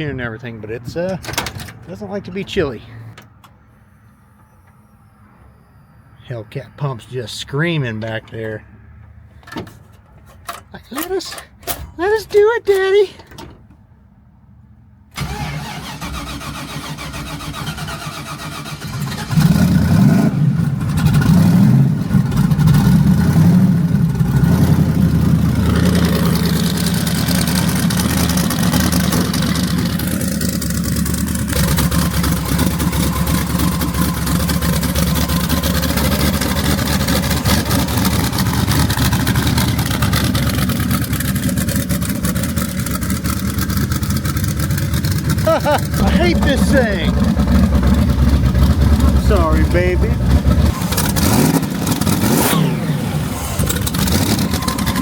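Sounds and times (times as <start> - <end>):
car engine cranking and starting: 15.1 - 55.0.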